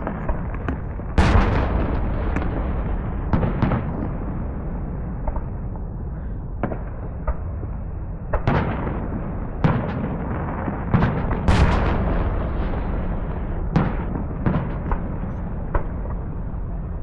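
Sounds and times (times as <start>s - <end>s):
fireworks bangs and pops: 0.0s - 4.5s, 8.3s - 16.6s
low rumble of fireworks: 0.0s - 17.0s.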